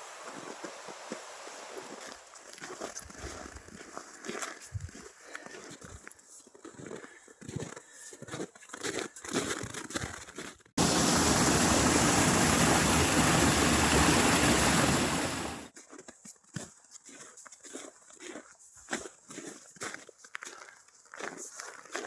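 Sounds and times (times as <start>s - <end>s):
loud steady rushing noise: 10.8s - 15.7s.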